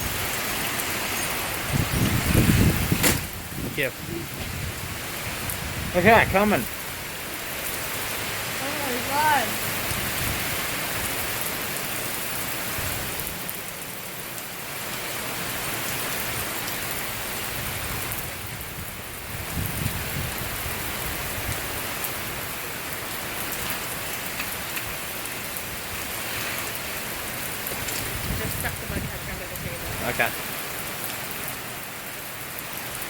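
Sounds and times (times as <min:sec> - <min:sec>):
heavy rain pouring: 0:00.0 - 0:33.0
low thunder rumble: 0:01.6 - 0:05.0.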